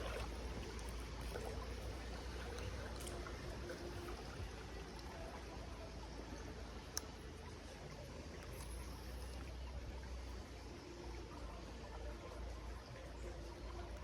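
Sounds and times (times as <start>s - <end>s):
stream flowing: 0.0s - 14.0s
faint ticks: 6.8s - 7.2s.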